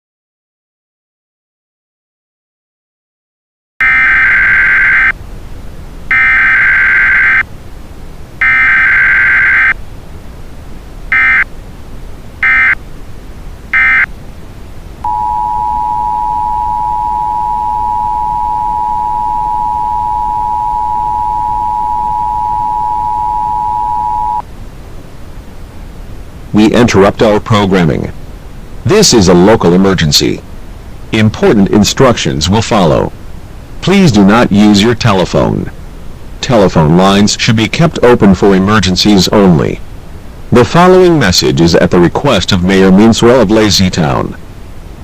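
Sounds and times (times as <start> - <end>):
two-note attention signal: 15.0 - 24.4.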